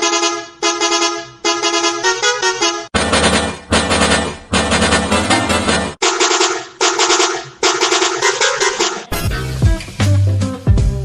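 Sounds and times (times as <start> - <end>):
harsh buzzing horn: 0.0 - 3.0, 6.0 - 9.2
musical bus horn playing a tune: 0.0 - 3.0, 6.0 - 9.6.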